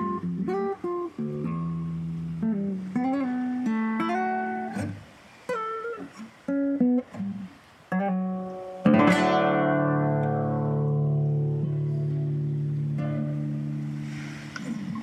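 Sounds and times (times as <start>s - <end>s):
acoustic guitar chords: 0.0s - 15.0s.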